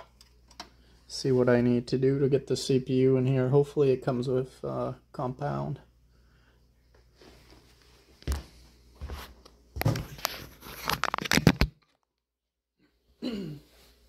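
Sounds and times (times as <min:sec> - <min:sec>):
crinkling plastic: 0:10.1 - 0:12.0.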